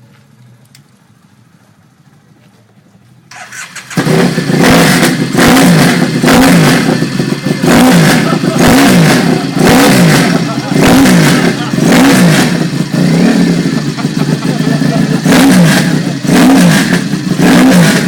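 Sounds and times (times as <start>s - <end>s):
motorcycle engine revving: 3.3s - 18.0s.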